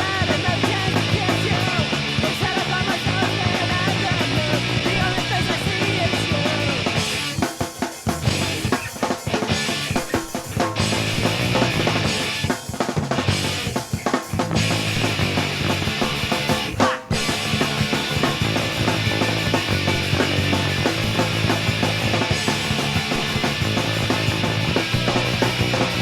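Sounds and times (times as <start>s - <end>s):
punk rock band: 0.0s - 26.0s
drum hits: 14.4s - 26.0s.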